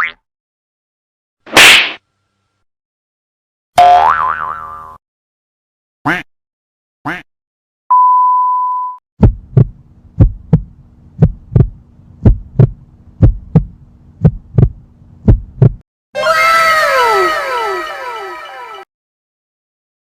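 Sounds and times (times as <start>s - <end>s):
heartbeat sound effect: 9.2s - 15.8s.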